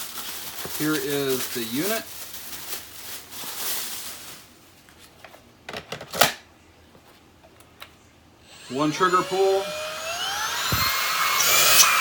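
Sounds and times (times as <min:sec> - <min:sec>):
rustling: 0:00.0 - 0:05.4.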